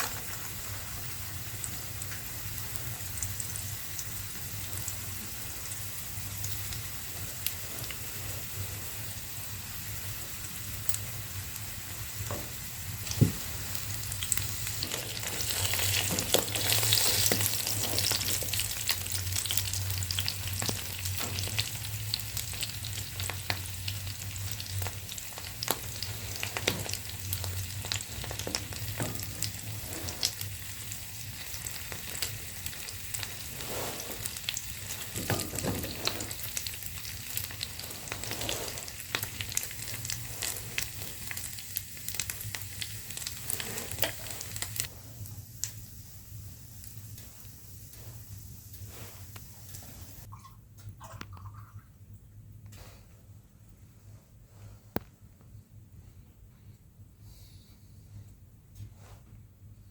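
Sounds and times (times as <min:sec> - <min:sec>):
food sizzling in a pan: 0:00.0 - 0:50.3.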